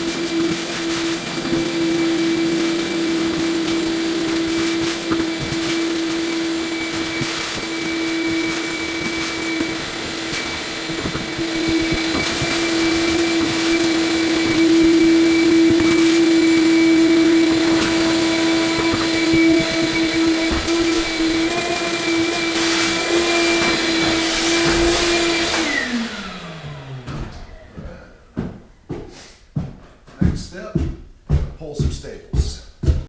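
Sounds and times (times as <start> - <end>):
small motor whining: 0.7 - 27.8.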